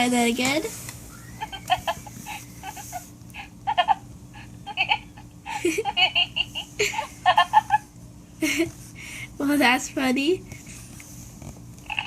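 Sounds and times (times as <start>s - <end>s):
recorded giggling laugh from toy speaker: 1.4s - 8.7s.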